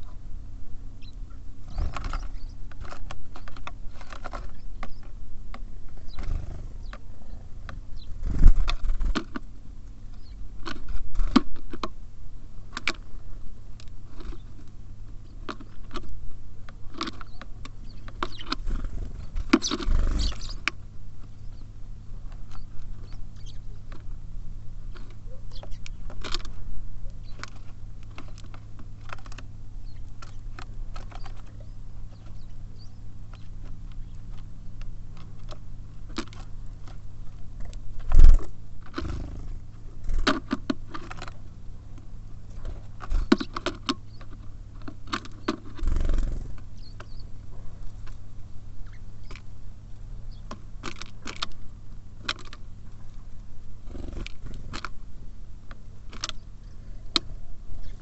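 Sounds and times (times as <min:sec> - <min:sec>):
birds pecking and hopping: 0:00.0 - 0:58.0
steady low hum: 0:00.0 - 0:58.0
wings fluttering: 0:01.0 - 0:05.2, 0:05.8 - 0:09.5, 0:16.9 - 0:24.2, 0:24.9 - 0:41.5, 0:42.4 - 0:48.2.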